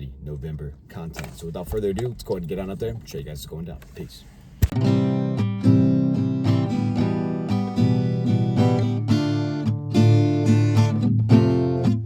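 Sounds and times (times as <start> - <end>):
strummed acoustic guitar music: 4.6 - 12.0.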